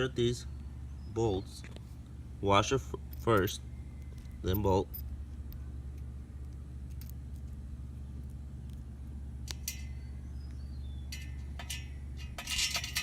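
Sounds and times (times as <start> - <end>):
steady low hum: 0.0 - 13.0
bolts clinking on metal frame: 3.0 - 3.6, 4.4 - 5.1, 9.5 - 10.1, 11.0 - 13.0.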